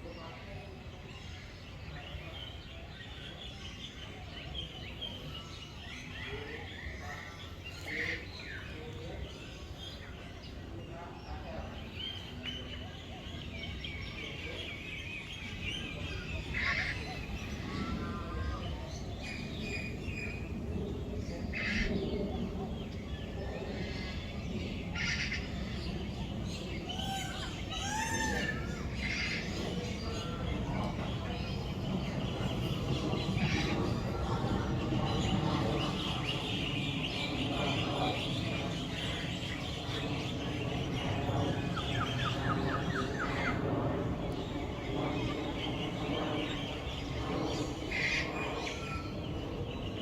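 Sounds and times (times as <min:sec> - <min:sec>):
birds chirping: 0:00.1 - 0:50.0.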